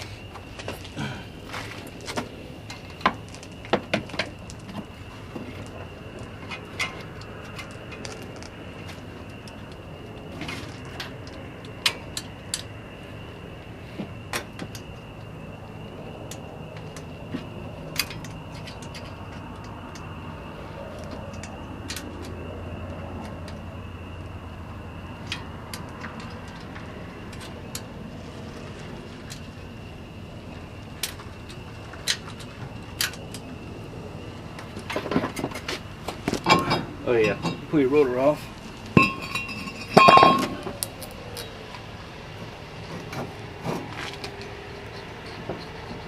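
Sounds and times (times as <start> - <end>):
steady background hum: 0.0 - 46.0
loud metallic clang: 39.0 - 40.7.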